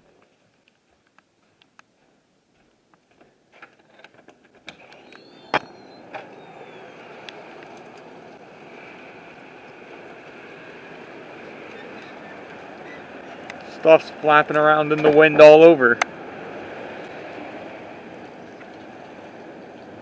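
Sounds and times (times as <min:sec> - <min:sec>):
faint clicks: 0:02.9 - 0:08.4, 0:11.6 - 0:13.9.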